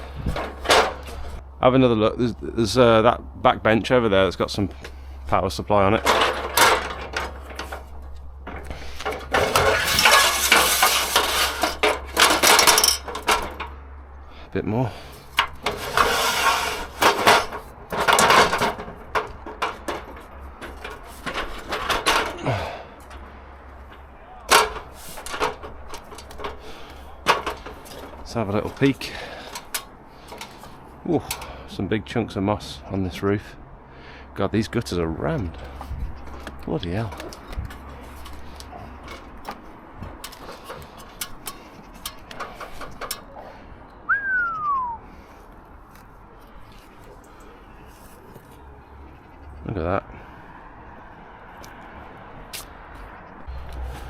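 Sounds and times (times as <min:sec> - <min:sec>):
knocks and clunks: 0:00.0 - 0:01.4, 0:05.8 - 0:13.9, 0:15.4 - 0:31.6
scraping and rustling: 0:00.0 - 0:01.4, 0:05.8 - 0:13.8, 0:15.1 - 0:31.6, 0:35.4 - 0:43.6
falling whistle-like note: 0:44.1 - 0:45.0.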